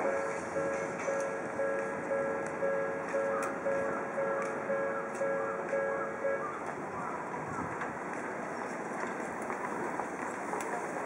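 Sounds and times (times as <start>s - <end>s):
level crossing warning bell: 0.0s - 6.8s.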